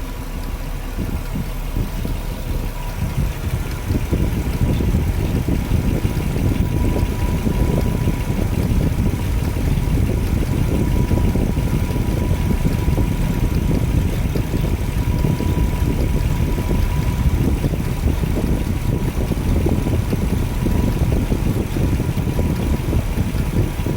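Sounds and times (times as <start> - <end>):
car engine running: 0.0 - 23.9
thin steady whine: 0.0 - 23.9.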